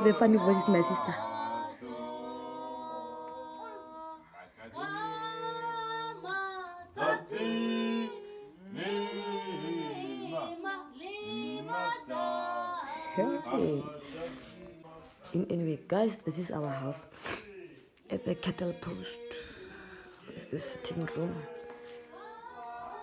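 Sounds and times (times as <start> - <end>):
group singing unaccompanied: 0.0 - 23.0.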